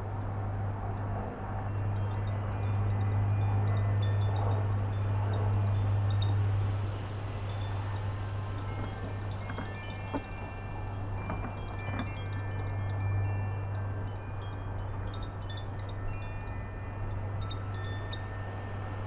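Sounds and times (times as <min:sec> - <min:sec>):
wind chimes ringing: 0:00.2 - 0:19.0.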